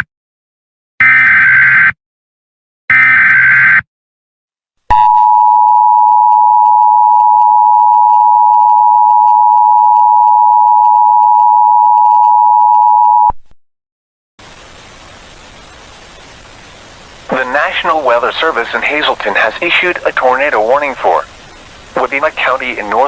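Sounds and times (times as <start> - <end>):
faint static hiss: 14.4 - 23.0.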